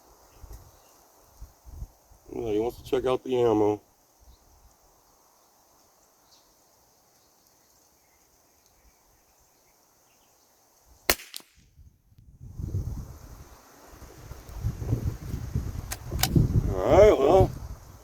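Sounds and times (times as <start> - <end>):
rifle shot: 11.1 - 11.7.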